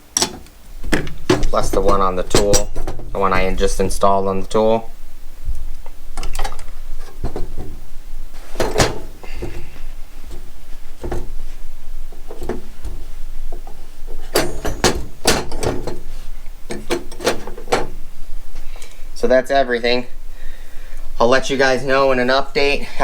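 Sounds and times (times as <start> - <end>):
hard items clicking and knocking: 0.0 - 3.4, 6.2 - 7.8, 8.5 - 11.5, 12.1 - 18.0.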